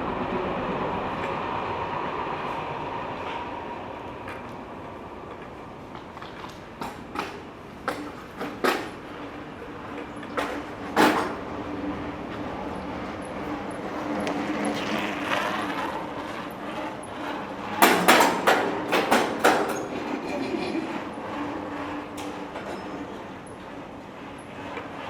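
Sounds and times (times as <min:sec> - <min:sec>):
loud knocks and clattering bangs: 0:17.8 - 0:19.9.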